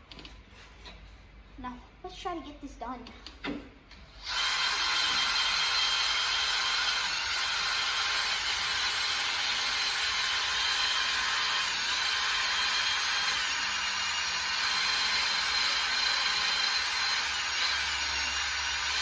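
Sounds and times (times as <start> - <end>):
electric drill on metal: 4.2 - 19.0.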